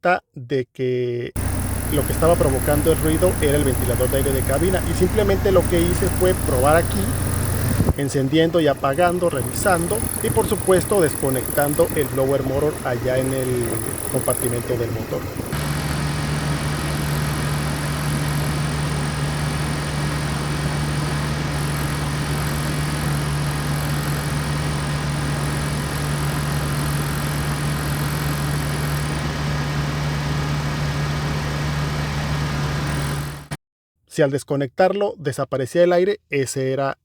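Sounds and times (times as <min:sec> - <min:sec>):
blower fan humming: 0:01.4 - 0:33.6.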